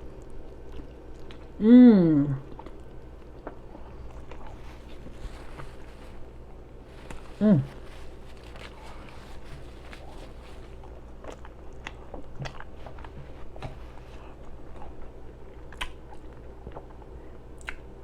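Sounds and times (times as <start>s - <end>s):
mouth chewing with wet smacks: 0.2s - 1.6s, 2.4s - 4.6s, 9.6s - 18.0s.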